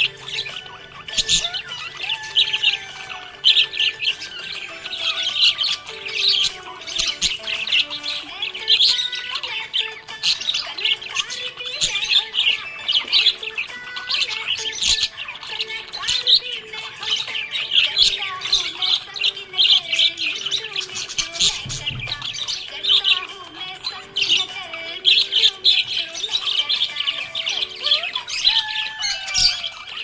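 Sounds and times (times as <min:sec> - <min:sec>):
background music: 0:00.0 - 0:30.0
budgerigars chirping and chattering: 0:00.0 - 0:30.0.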